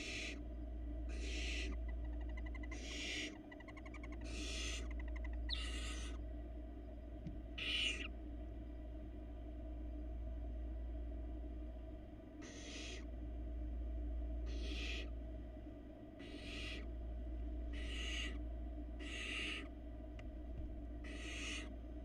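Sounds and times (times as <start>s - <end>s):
owl chicks hissing: 0.0s - 0.4s, 1.1s - 6.2s, 7.6s - 8.1s, 12.4s - 13.1s, 14.5s - 15.1s, 16.2s - 16.9s, 17.7s - 18.4s, 19.0s - 19.7s, 21.0s - 21.7s
low hum: 0.0s - 22.0s.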